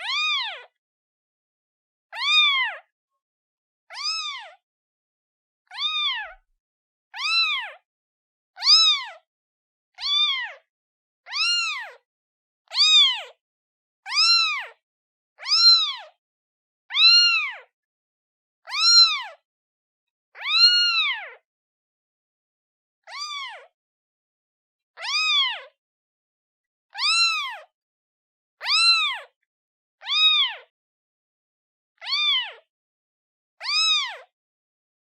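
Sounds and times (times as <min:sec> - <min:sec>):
newborn kitten meowing: 0:00.0 - 0:00.8, 0:02.1 - 0:02.9, 0:03.9 - 0:04.6, 0:05.7 - 0:06.5, 0:07.2 - 0:07.9, 0:08.6 - 0:09.3, 0:10.0 - 0:12.0, 0:12.7 - 0:13.4, 0:14.1 - 0:14.8, 0:15.4 - 0:16.2, 0:16.9 - 0:17.7, 0:18.6 - 0:19.4, 0:20.4 - 0:21.4, 0:23.0 - 0:23.8, 0:25.0 - 0:25.8, 0:26.9 - 0:27.7, 0:28.6 - 0:29.4, 0:30.0 - 0:30.7, 0:32.0 - 0:32.7, 0:33.6 - 0:34.4.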